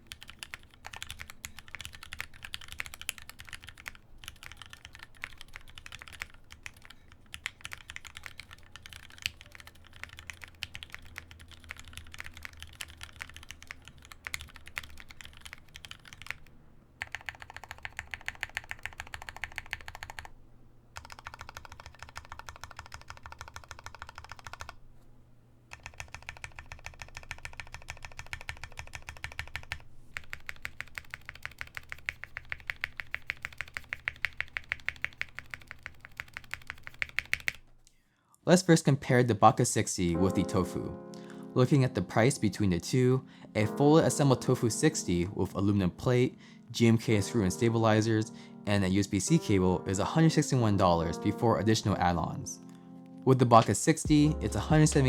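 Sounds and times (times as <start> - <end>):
mechanical keyboard typing: 0.0 - 25.0, 25.7 - 37.8.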